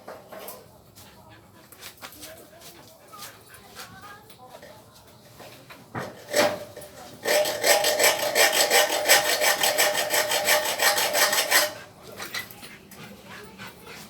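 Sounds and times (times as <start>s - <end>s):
hand saw cutting wood: 6.0s - 12.0s.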